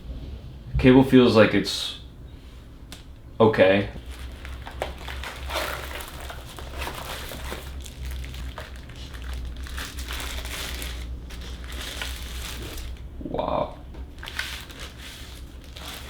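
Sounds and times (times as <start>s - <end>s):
steady low hum: 0.0s - 16.0s
packaging crinkling: 4.0s - 13.2s, 14.0s - 16.0s.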